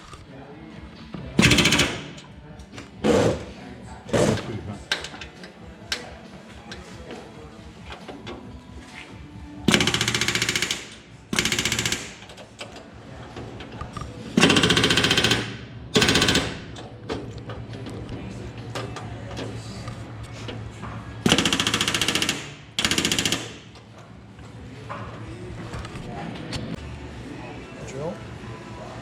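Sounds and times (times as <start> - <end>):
pneumatic rivet gun hammering: 9.7 - 12.4, 21.2 - 23.7.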